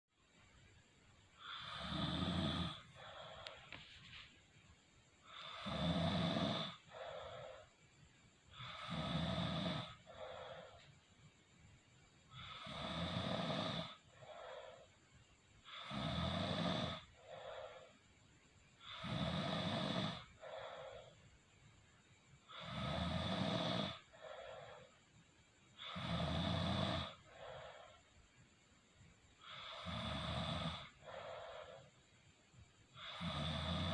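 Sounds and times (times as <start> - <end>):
soft breath sound: 0.2 - 12.7, 13.6 - 22.9, 23.5 - 26.2, 26.8 - 33.9
loud snoring: 1.4 - 3.6, 5.2 - 7.6, 8.5 - 10.8, 12.3 - 14.8, 15.6 - 17.9, 18.8 - 21.1, 22.5 - 24.9, 25.8 - 27.9, 29.4 - 31.9, 32.9 - 33.9.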